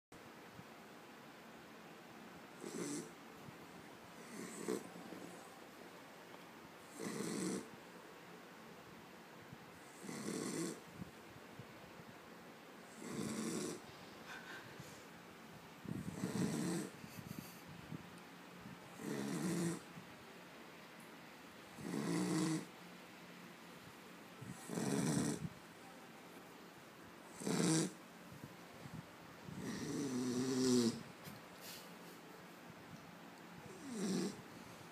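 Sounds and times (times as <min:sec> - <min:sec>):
pet snoring: 0:02.6 - 0:03.1, 0:04.2 - 0:05.4, 0:06.9 - 0:07.7, 0:09.8 - 0:10.8, 0:12.9 - 0:14.4, 0:15.9 - 0:17.6, 0:19.0 - 0:19.9, 0:21.8 - 0:22.7, 0:24.4 - 0:25.5, 0:27.3 - 0:28.0, 0:29.5 - 0:31.1, 0:33.7 - 0:34.8
quiet breathing: 0:13.7 - 0:20.0, 0:28.2 - 0:34.9.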